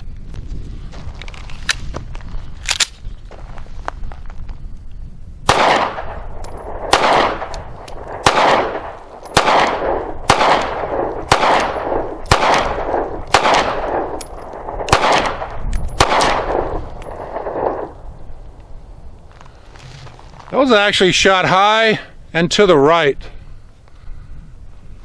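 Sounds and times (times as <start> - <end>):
pistol shots with echo: 5.4 - 18.0.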